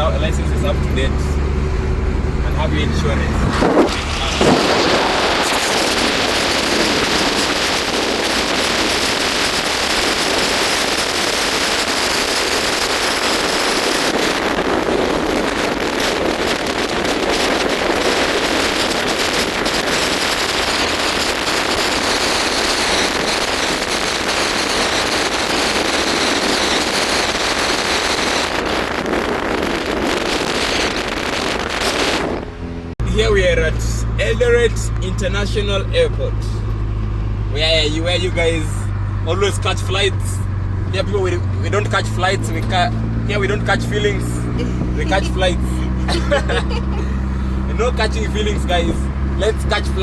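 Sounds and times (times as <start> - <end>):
car road and wind noise: 0.0 - 50.0.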